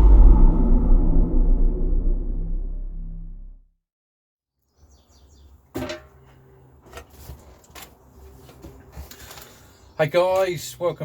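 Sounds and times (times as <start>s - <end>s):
bass-heavy intro music: 0.0s - 3.6s
deep rumble: 0.0s - 3.7s.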